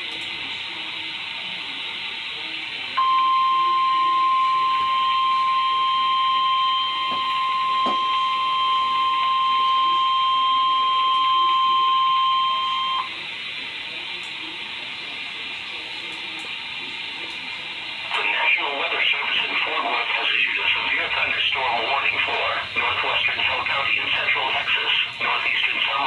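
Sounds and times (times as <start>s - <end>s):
radio hiss: 0.0s - 26.0s
steady alarm tone: 3.0s - 13.4s, 18.0s - 26.0s.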